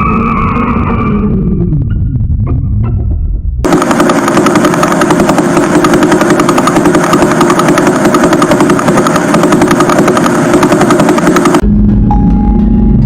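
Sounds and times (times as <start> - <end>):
rapid even electronic pulsing: 3.6 - 11.6.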